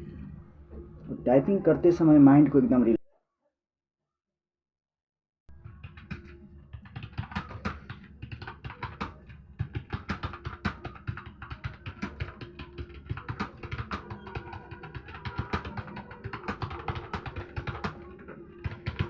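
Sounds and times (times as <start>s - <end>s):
background music: 0.0s - 3.0s, 5.5s - 19.0s
fast typing on a keyboard: 5.5s - 19.0s.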